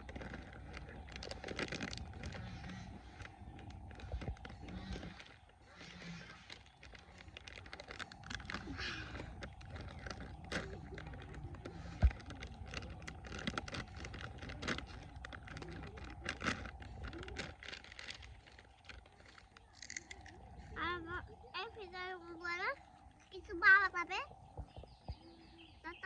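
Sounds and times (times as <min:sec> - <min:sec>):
crinkling packaging: 0:00.0 - 0:21.1
package being opened: 0:06.5 - 0:20.4.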